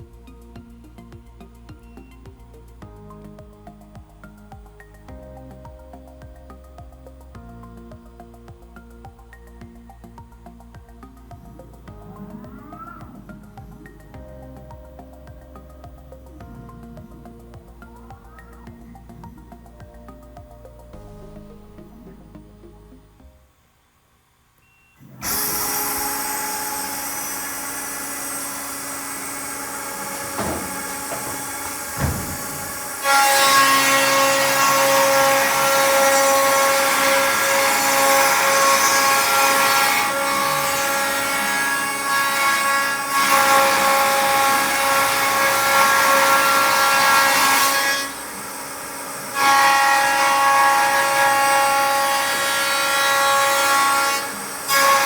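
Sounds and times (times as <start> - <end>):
router motor whining: 25.2 - 49.4
short knocks: 29.3 - 34.0.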